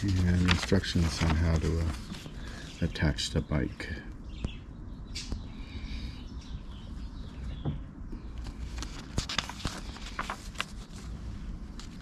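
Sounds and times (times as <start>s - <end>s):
birds chirping: 0.1s - 8.9s.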